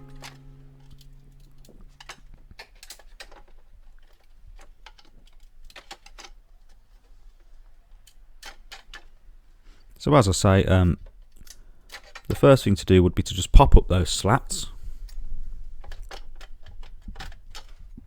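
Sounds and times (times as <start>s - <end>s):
held music note: 0.0s - 2.4s.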